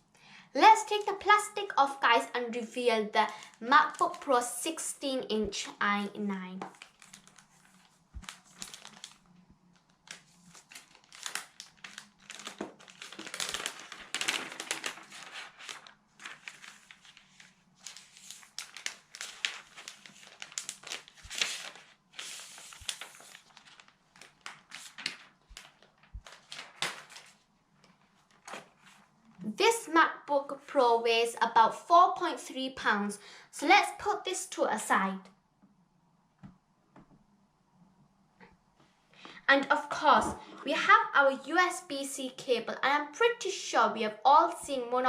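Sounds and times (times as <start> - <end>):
plastic wrapping crinkling: 3.1 - 4.4, 6.6 - 29.4.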